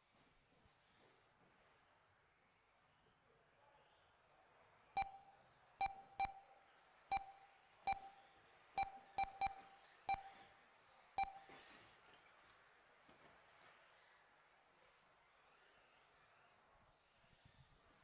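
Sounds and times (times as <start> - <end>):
short electronic beeps: 5.0 - 6.5, 7.1 - 8.2, 8.8 - 10.4, 11.2 - 11.5.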